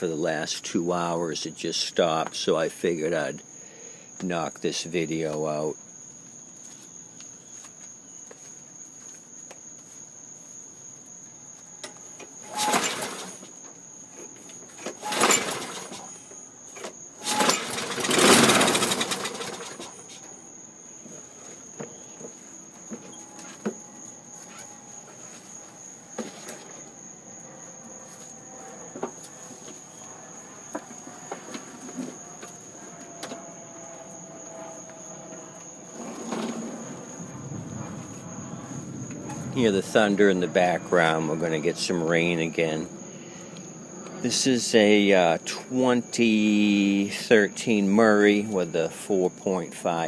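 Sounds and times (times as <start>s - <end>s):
crickets singing: 0.0s - 50.0s
lawn mower engine pull-starting: 12.4s - 13.6s, 14.7s - 20.2s, 35.4s - 37.3s.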